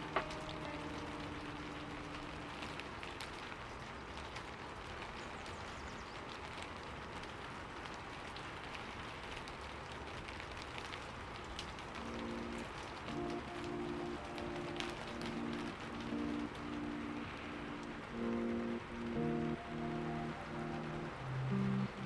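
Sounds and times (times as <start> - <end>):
piano note and chords: 0.0 - 2.9, 12.0 - 22.0
fire crackling and popping: 0.0 - 22.0.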